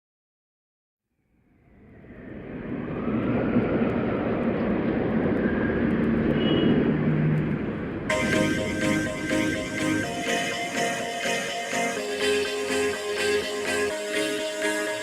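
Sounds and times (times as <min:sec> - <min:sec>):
steady rumbling rushing noise: 0:01.7 - 0:15.0.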